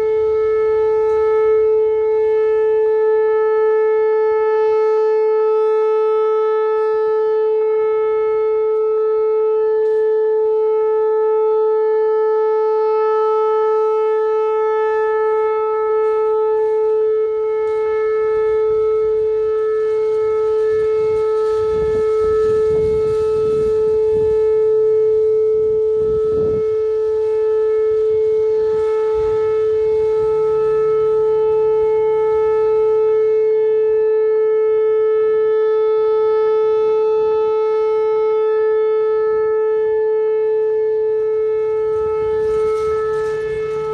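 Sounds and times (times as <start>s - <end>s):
tornado warning siren: 0.0s - 43.9s.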